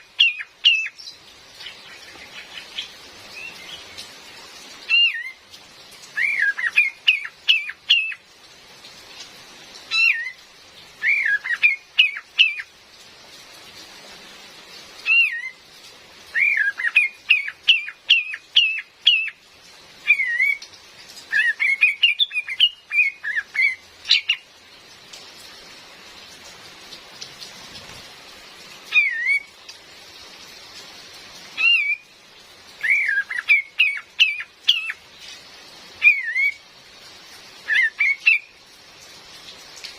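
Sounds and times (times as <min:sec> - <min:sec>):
bird calling: 0:00.0 - 0:04.1, 0:06.2 - 0:08.2, 0:11.0 - 0:12.7, 0:16.3 - 0:19.4, 0:20.1 - 0:20.7, 0:21.3 - 0:24.5, 0:28.9 - 0:29.5, 0:32.8 - 0:35.0, 0:36.0 - 0:36.6, 0:37.6 - 0:38.6
rain hissing: 0:00.0 - 0:39.9.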